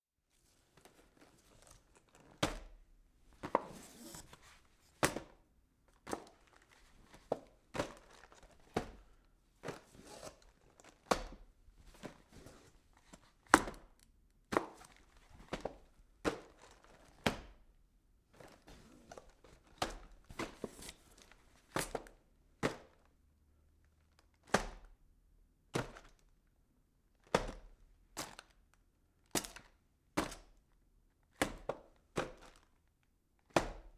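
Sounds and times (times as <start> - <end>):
boxes sliding and rustling: 3.4 - 5.2, 9.6 - 11.0, 11.9 - 13.2, 18.4 - 19.7, 20.3 - 21.4.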